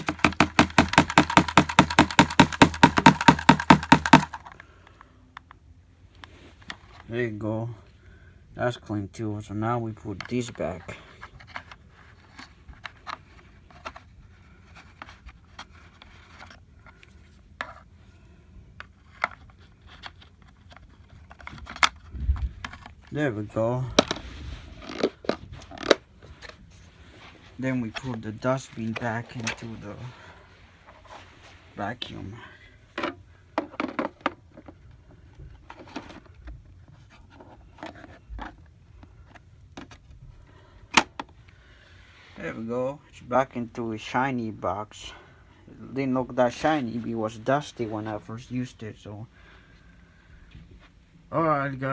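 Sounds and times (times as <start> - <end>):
sharp plastic click: 0.0 - 4.6
plastic parts clicking: 0.0 - 4.7, 18.8 - 23.1, 24.8 - 26.6.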